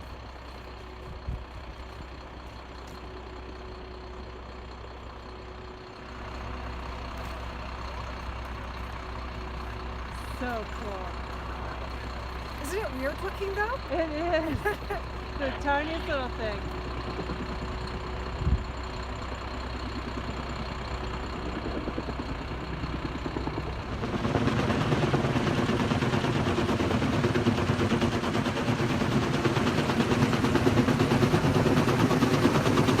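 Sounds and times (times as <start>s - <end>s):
helicopter rotors chopping: 10.3s - 18.7s, 19.9s - 33.0s.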